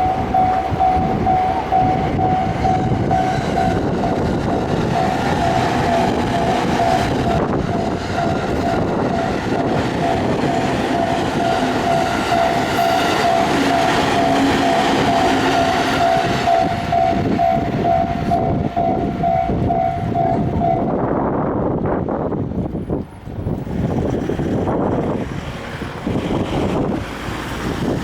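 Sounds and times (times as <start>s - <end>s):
train wheels clattering: 0.0s - 20.7s
level-crossing warning bell: 0.0s - 21.1s.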